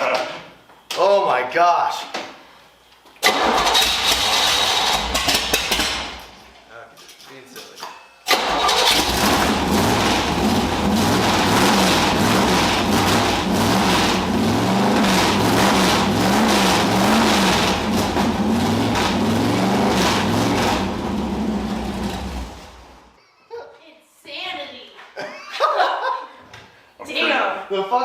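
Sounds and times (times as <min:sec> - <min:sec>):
car engine revving: 0:08.3 - 0:23.1.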